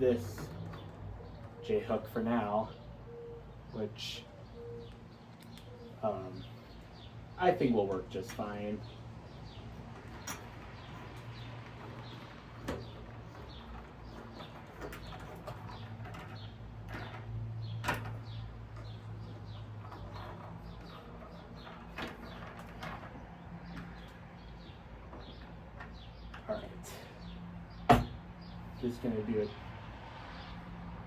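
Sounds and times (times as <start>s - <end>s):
small birds chirping: 0.0s - 30.9s
hardware knocks: 27.9s - 28.2s.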